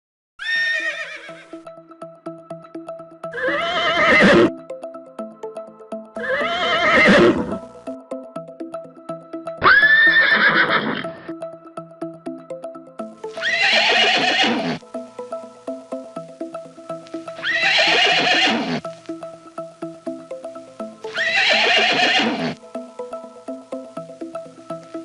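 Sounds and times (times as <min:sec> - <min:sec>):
horse neighing: 0:00.4 - 0:01.5, 0:03.3 - 0:04.5, 0:06.2 - 0:07.6, 0:09.6 - 0:11.1, 0:13.4 - 0:14.8, 0:17.4 - 0:18.8, 0:21.1 - 0:22.6
repeating background music: 0:01.4 - 0:25.0.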